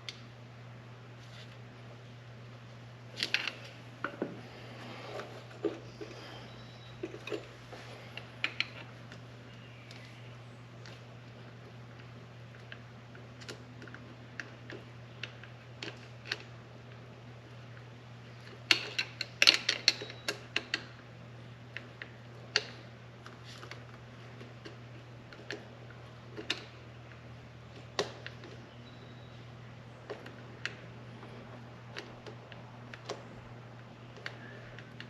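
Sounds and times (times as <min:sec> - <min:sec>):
steady low hum: 0:00.0 - 0:35.0
hand tools clicking and tapping: 0:18.6 - 0:20.9.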